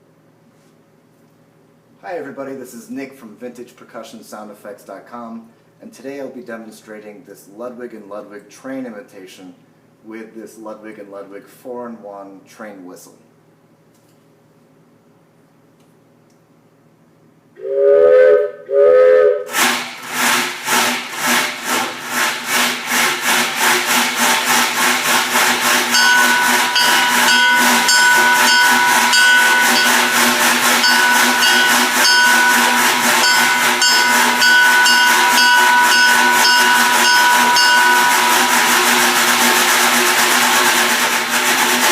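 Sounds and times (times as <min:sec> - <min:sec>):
train whistle blasts: 0:17.6 - 0:19.7, 0:25.5 - 0:39.2
steam locomotive chuffing: 0:17.6 - 0:41.9
steady high tones: 0:25.2 - 0:39.7.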